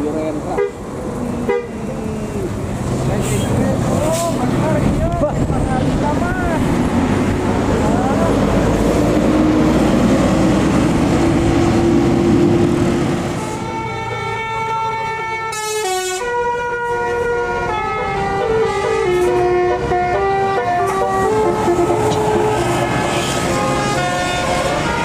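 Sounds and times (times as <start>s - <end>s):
musical air horn playing a tune: 13.5s - 25.0s.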